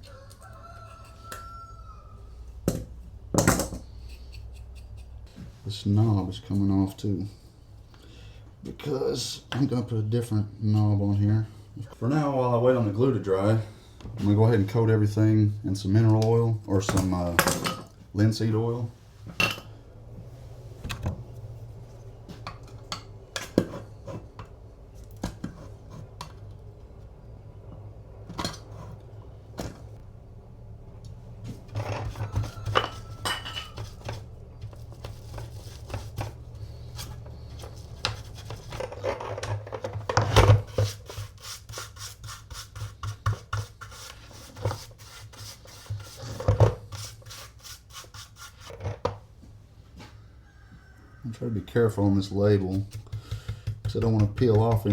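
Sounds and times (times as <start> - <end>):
rag rubbing wood: 31.7 - 39.2, 40.6 - 48.8.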